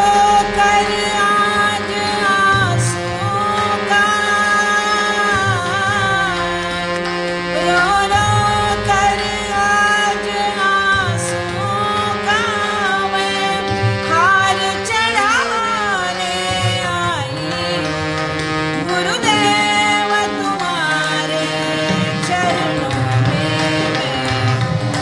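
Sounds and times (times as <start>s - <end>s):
drum beating: 0.0s - 15.4s
steady held drone: 0.0s - 25.0s.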